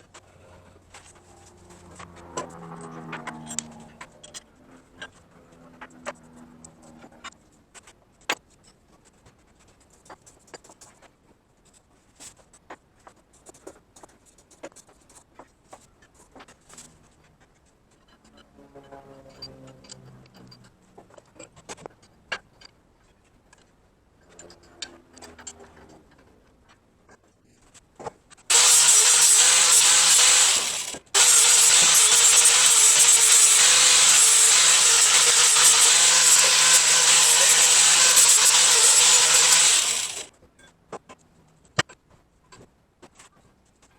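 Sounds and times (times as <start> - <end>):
power tool grinding: 28.5 - 40.3.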